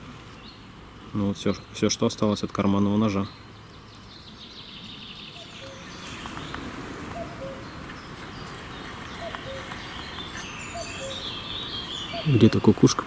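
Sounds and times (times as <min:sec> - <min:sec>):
distant cuckoo calling: 0:03.0 - 0:13.0.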